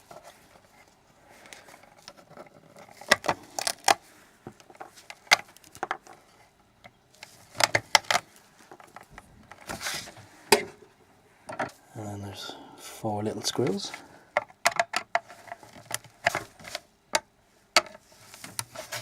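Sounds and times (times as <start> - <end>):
plastic clicks and scrapes: 0.0 - 10.2.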